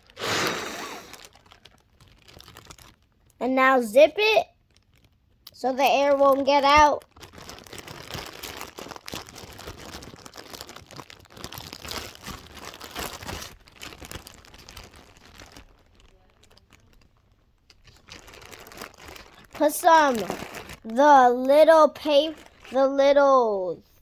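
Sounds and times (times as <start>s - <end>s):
plastic bags crinkling: 0.0s - 23.5s.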